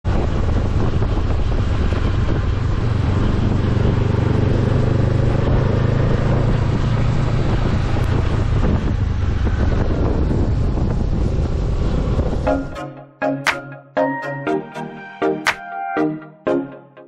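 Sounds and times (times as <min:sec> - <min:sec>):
wind noise on microphone: 0:00.0 - 0:12.7.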